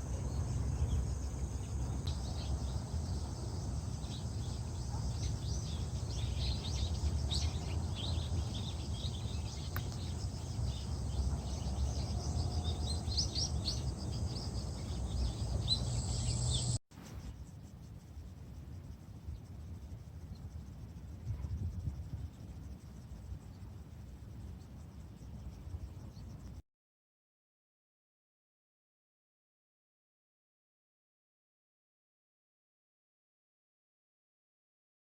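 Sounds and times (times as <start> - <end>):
steady low rumble: 0.0 - 16.8
small birds chirping: 0.0 - 17.7.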